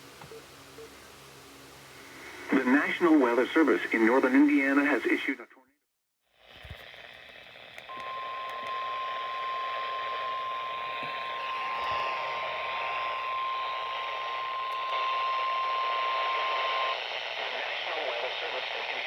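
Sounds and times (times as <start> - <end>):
radio static hiss: 0.0 - 5.6, 7.9 - 19.0
steady alarm tone: 7.9 - 17.0.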